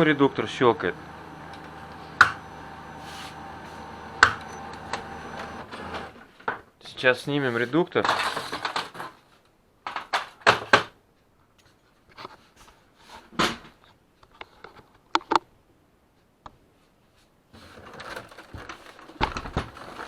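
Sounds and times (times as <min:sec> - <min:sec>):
rustling and scraping of parts: 0:01.0 - 0:06.7, 0:07.4 - 0:10.4, 0:11.6 - 0:15.4, 0:16.8 - 0:20.0.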